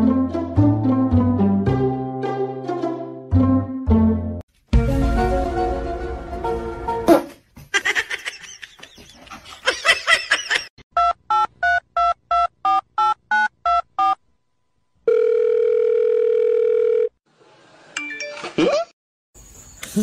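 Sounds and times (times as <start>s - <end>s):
steady phone tone: 15.1s - 17.2s.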